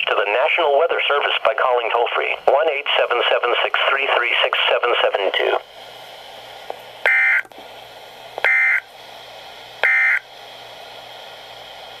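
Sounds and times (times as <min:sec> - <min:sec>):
radio hiss: 0:00.0 - 0:07.8.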